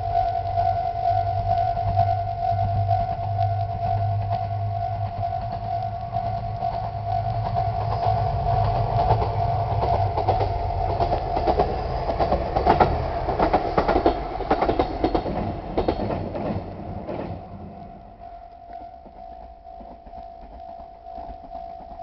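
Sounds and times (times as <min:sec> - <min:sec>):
level crossing alarms ringing: 0:00.0 - 0:12.8, 0:14.6 - 0:22.0
low train rumble: 0:00.0 - 0:22.0
train wheels clacking over rail joints: 0:07.4 - 0:17.7.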